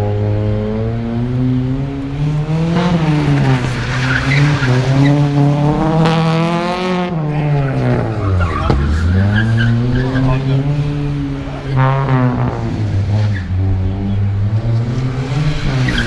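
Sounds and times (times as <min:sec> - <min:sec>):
car engine revving: 0:00.0 - 0:16.0
tyres squealing: 0:07.6 - 0:11.8.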